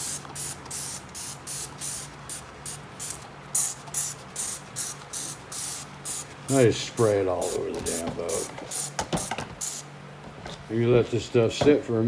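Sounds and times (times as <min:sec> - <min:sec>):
spray bottle squirting: 0:00.0 - 0:06.6, 0:07.4 - 0:09.8.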